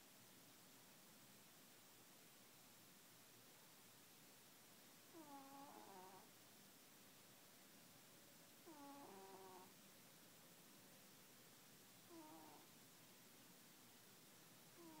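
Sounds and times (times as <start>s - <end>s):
cat snoring faintly: 5.0s - 6.4s, 8.6s - 9.8s, 12.0s - 12.8s, 14.7s - 15.0s.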